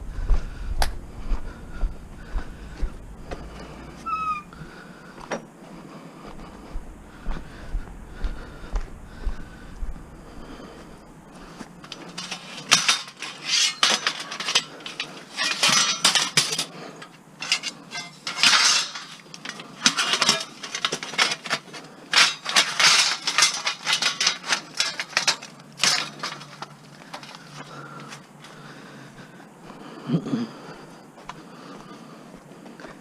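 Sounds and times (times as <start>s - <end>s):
scrap metal clattering: 11.8s - 28.2s.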